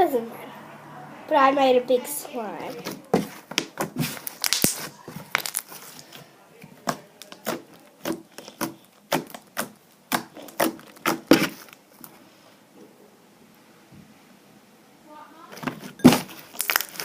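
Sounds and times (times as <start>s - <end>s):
slime popping and clicking: 3.6s - 5.7s.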